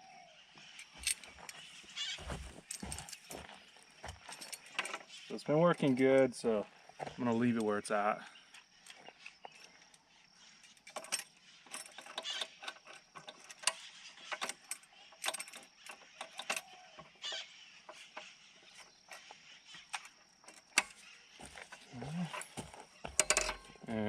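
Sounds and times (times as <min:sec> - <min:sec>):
hand tools and bolts clinking: 0:00.7 - 0:06.6, 0:10.6 - 0:24.0.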